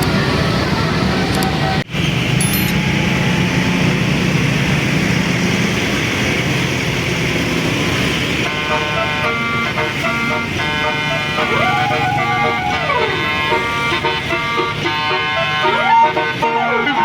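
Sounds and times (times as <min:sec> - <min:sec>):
road traffic noise: 0:00.0 - 0:17.0
bus horn playing melody: 0:08.3 - 0:17.0.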